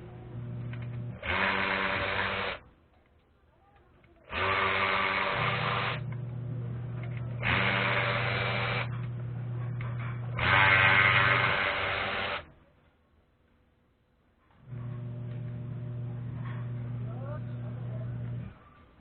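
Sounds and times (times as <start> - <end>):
impact wrench motor running: 0.5 - 2.6, 4.3 - 9.3, 9.9 - 12.5
steady low hum: 4.5 - 12.4, 14.6 - 18.6.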